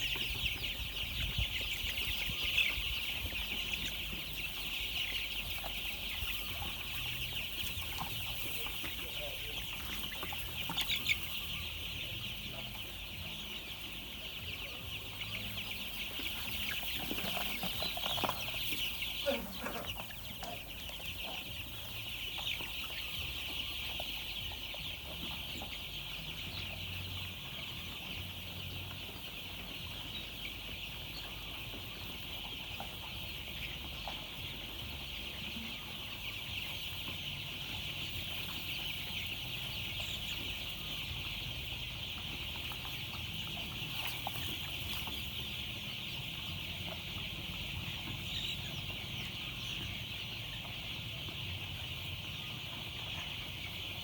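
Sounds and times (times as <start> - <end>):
chicks peeping: 0.0 - 54.0.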